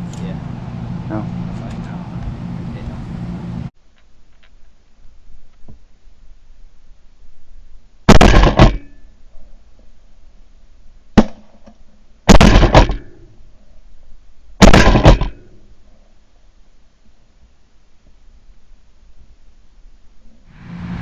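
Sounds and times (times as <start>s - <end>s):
shotgun shots: 8.1s - 9.0s, 11.2s - 11.6s, 12.3s - 13.2s, 14.6s - 15.5s.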